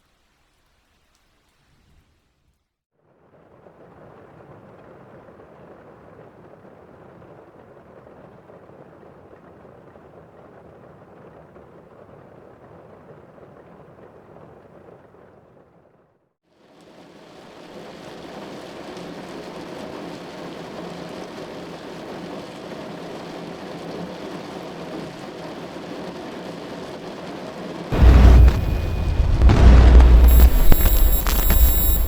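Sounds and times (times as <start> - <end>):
heavy rain: 24.9 - 32.0
deep clap of thunder: 27.9 - 32.0.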